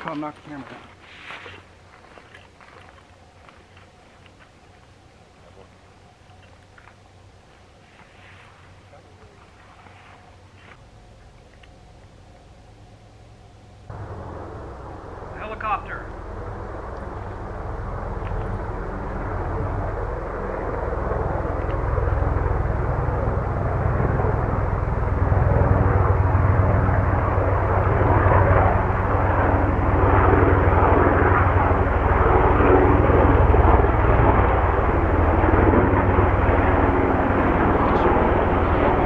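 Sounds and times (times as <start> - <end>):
helicopter flying over: 10.8 - 39.0.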